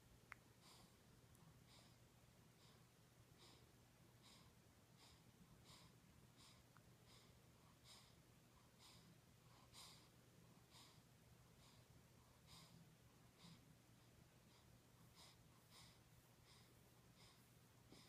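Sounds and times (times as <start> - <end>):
baby breathing: 14.4 - 18.0.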